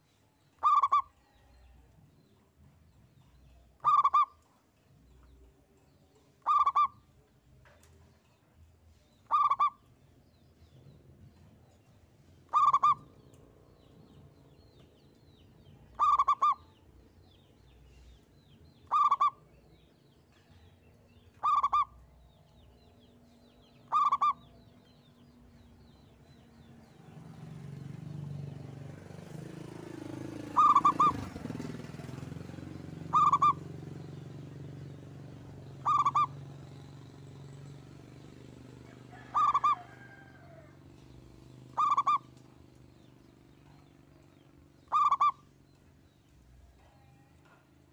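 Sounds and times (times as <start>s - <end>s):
dove cooing: 0.6s - 1.2s, 3.8s - 4.4s, 6.4s - 7.0s, 9.3s - 9.8s, 12.5s - 13.1s, 15.9s - 16.6s, 18.8s - 19.4s, 21.4s - 21.9s, 23.9s - 24.4s, 30.0s - 32.1s, 33.0s - 33.7s, 35.8s - 36.4s, 38.9s - 40.7s, 41.7s - 42.3s, 44.9s - 45.4s.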